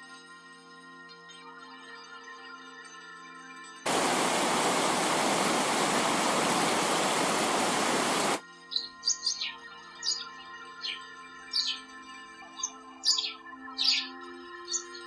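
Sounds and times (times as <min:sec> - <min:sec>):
loud rushing hiss: 0:03.9 - 0:08.4
soft background music: 0:08.5 - 0:15.0.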